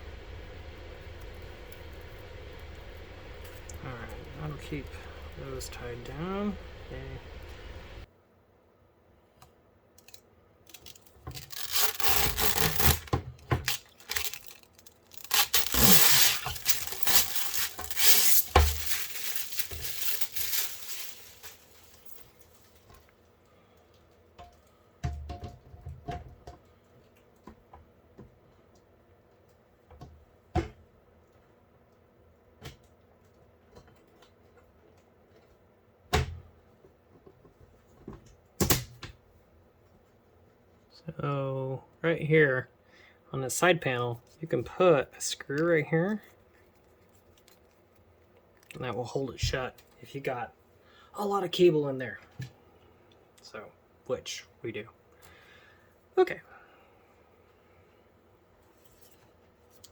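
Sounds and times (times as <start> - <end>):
rustling and scraping of cables: 0.0 - 8.0, 10.0 - 24.8, 43.9 - 50.4, 57.3 - 59.9.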